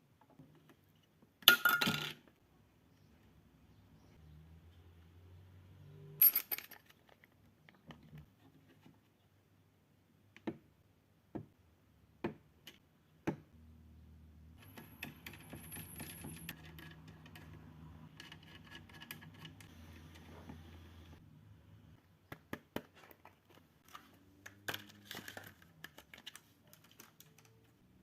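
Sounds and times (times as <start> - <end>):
small hard parts clinking: 1.4 - 2.3, 6.2 - 7.4, 14.6 - 19.7.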